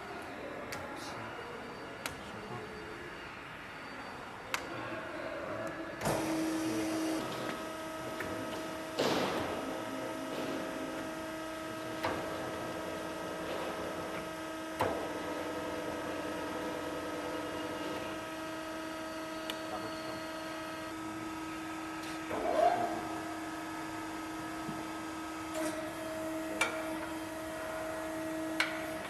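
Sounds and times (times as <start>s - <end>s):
grinder motor hum: 6.0s - 29.0s.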